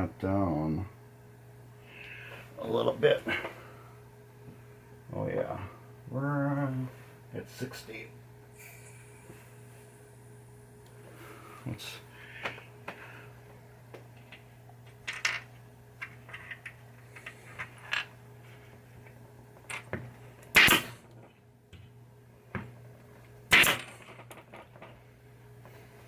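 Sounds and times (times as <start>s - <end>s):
steady low hum: 0.0s - 26.0s
pneumatic staple gun firing: 20.5s - 21.0s, 23.5s - 24.0s.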